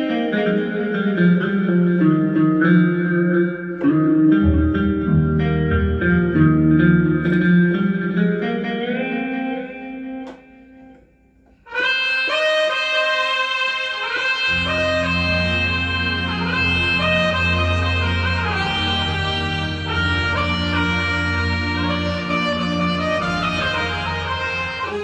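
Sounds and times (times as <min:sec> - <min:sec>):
plucked guitar-like keyboard: 0:00.0 - 0:25.0
bass line: 0:04.3 - 0:07.4, 0:14.3 - 0:25.0
bright sustained keyboard tone: 0:13.0 - 0:25.0.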